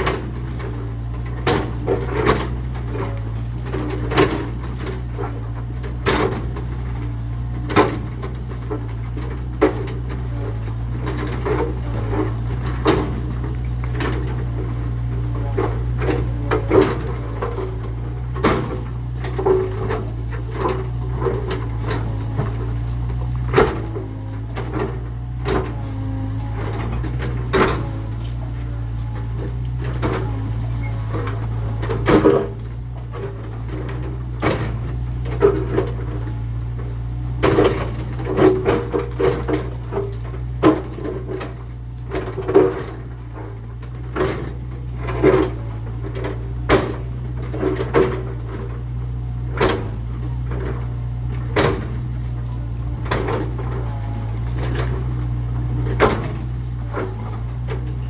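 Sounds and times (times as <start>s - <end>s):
excavator engine running: 0.0s - 58.0s.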